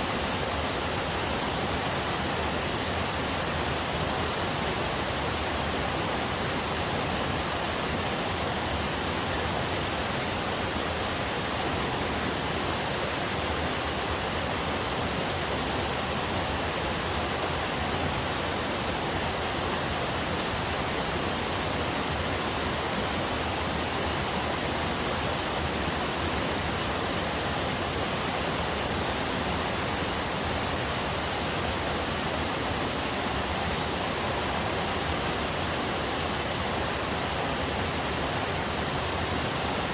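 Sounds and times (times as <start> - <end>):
waterfall water rushing: 0.0 - 39.9.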